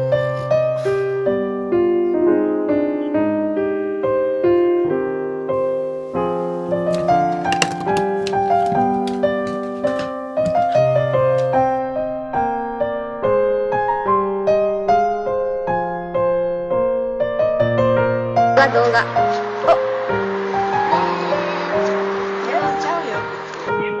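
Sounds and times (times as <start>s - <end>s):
gentle piano music: 0.0s - 24.0s.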